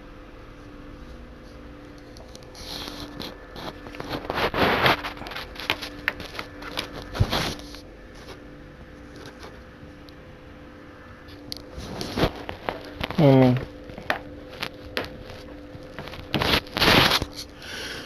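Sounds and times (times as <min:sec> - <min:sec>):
faint steady hum: 0:00.0 - 0:18.0
dvd cases scraping and clicking: 0:02.0 - 0:08.4, 0:11.3 - 0:13.2, 0:13.9 - 0:17.6.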